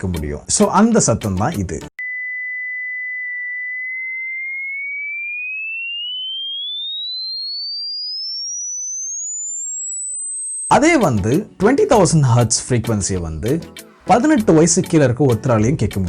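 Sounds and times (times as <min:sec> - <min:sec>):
pure sine tone sweeping upward: 0:02.0 - 0:11.6.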